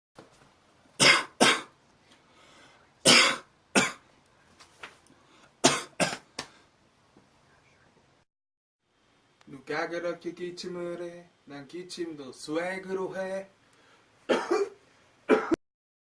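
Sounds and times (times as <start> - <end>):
person coughing: 1.0 - 1.7, 3.0 - 4.0, 5.6 - 6.3, 14.3 - 15.6.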